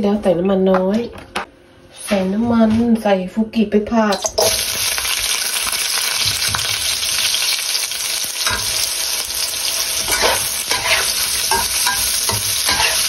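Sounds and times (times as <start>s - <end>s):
vegetables sizzling in oil: 4.1s - 13.0s
utensil scraping a pan: 9.8s - 13.0s.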